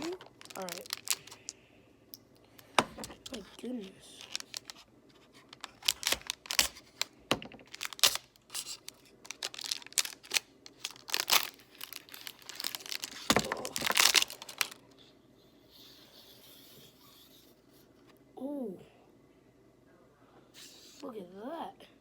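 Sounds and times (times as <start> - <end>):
packaging crinkling and tearing: 0.0 - 1.6, 2.6 - 14.9.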